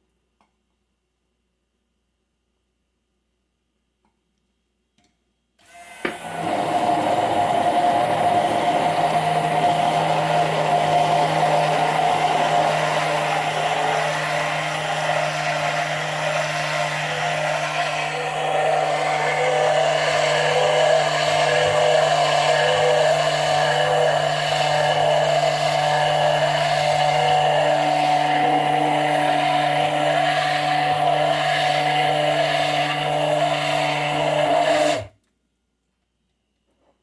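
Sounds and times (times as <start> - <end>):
immersion blender motor: 5.6 - 35.2.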